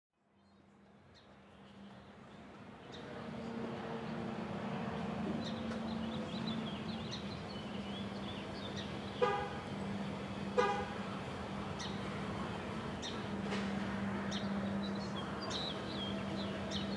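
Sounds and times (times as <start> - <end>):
birds chirping: 5.3 - 11.0, 14.2 - 16.9
vehicle horn toots: 9.2 - 9.6, 10.6 - 11.0.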